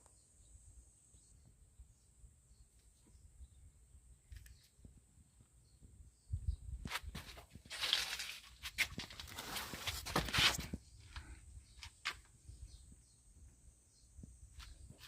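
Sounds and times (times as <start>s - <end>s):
rustling and scraping: 6.9s - 12.3s.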